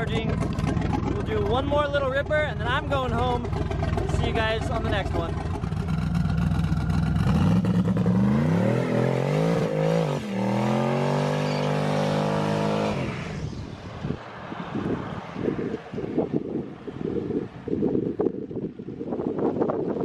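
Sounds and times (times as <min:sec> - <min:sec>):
car engine accelerating hard: 0:03.4 - 0:15.8.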